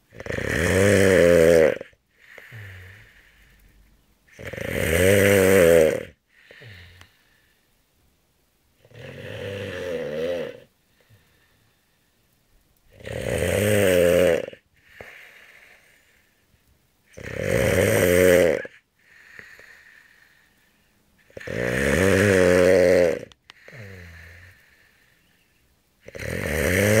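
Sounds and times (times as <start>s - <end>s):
loud snoring: 0.1s - 3.6s, 4.3s - 7.1s, 8.8s - 10.7s, 12.9s - 15.9s, 17.1s - 20.4s, 21.2s - 24.8s, 26.0s - 27.0s.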